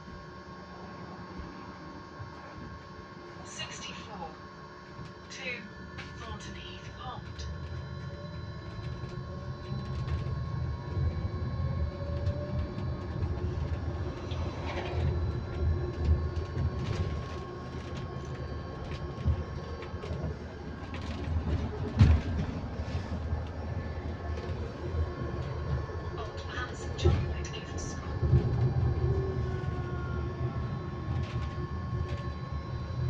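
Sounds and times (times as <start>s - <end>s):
electric bus drive whine: 0.0s - 33.0s
bus body rattles and bumps: 7.0s - 33.0s
low road rumble: 7.4s - 33.0s.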